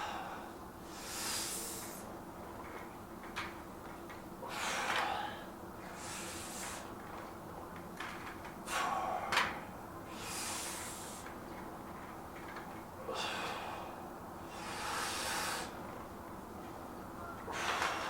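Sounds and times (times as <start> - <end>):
man breathing hard: 0.0 - 2.1, 4.4 - 6.9, 8.7 - 9.4, 10.1 - 11.3, 13.1 - 15.8, 17.5 - 18.0.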